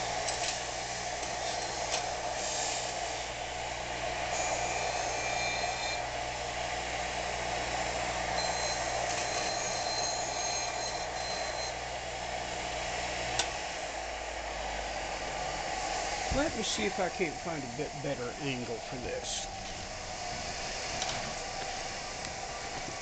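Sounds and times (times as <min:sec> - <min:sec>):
wire wheel scouring steel: 0:00.0 - 0:06.3, 0:08.4 - 0:11.8
thin high squeal: 0:04.4 - 0:06.0, 0:08.5 - 0:11.7.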